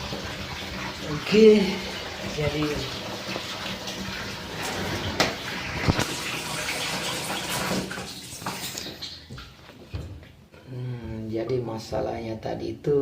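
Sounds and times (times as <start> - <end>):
water running in washing machine: 0.0 - 9.6.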